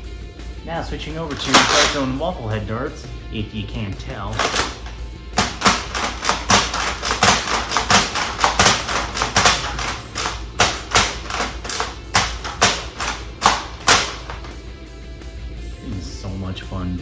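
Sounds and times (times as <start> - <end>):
foam dart blaster clacks and pops: 1.3 - 2.3, 4.3 - 14.6.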